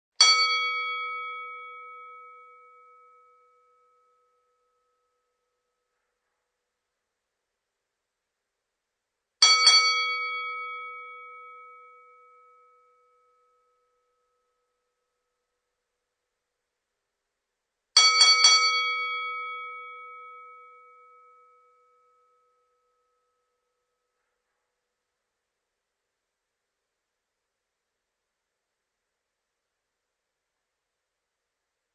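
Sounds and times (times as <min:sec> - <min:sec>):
boxing ring bell ringing: 0:00.2 - 0:05.6, 0:09.4 - 0:14.6, 0:18.0 - 0:24.1.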